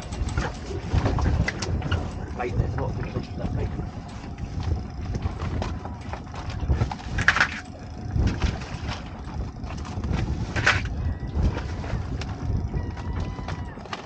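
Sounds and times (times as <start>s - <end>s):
wind rumble on microphone: 0.0s - 14.0s
lobster pot knocks and rattles: 4.6s - 14.0s.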